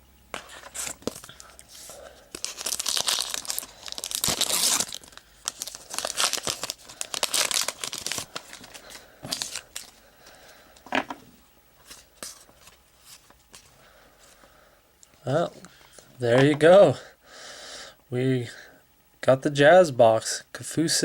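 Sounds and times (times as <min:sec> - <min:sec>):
wrapper tearing and crinkling: 0:02.3 - 0:10.0.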